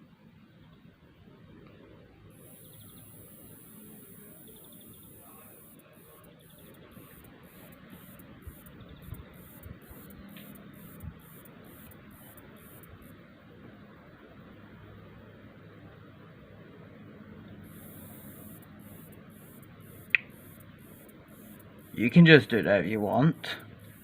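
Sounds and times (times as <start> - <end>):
cicada buzzing: 2.3 - 13.2, 17.6 - 24.0.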